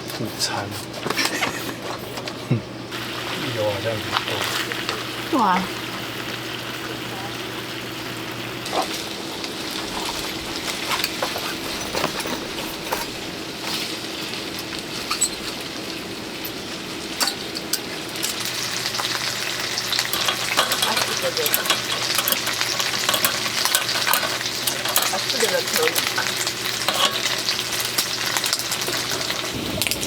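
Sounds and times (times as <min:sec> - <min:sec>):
food sizzling in a pan: 0:02.9 - 0:30.0
crackles and pops: 0:17.2 - 0:30.0.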